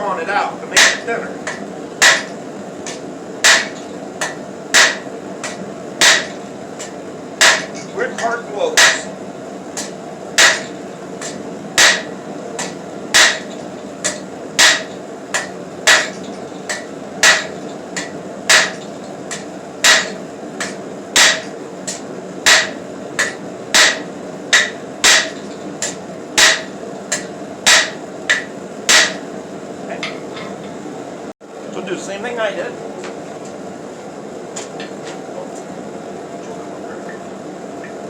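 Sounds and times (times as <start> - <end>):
hammer striking steel on anvil: 0.8 - 9.2, 9.8 - 29.3.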